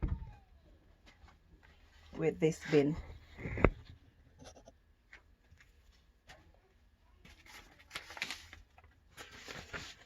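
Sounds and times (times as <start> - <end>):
faint clicks and rustles: 0.0 - 10.0.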